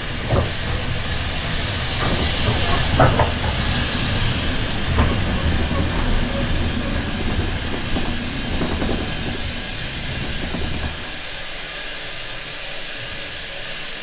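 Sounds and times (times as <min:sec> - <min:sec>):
steady steam hiss: 0:00.0 - 0:14.0
train carriage rumbling over rail joints: 0:00.0 - 0:14.0.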